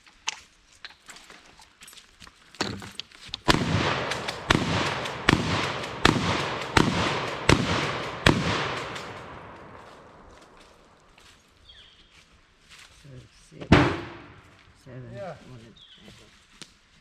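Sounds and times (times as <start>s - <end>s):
shotgun shots with echo: 2.6s - 11.0s, 13.6s - 14.6s.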